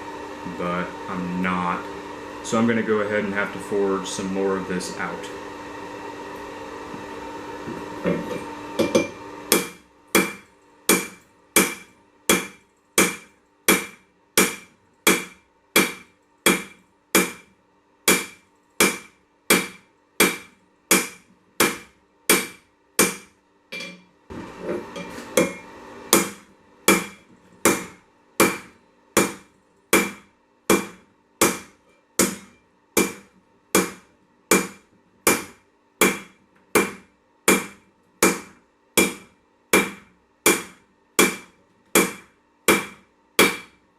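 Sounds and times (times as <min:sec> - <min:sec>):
steady hum: 0:00.0 - 0:43.9
hammer striking steel on anvil: 0:08.1 - 0:17.5, 0:18.1 - 0:24.1, 0:24.9 - 0:43.7.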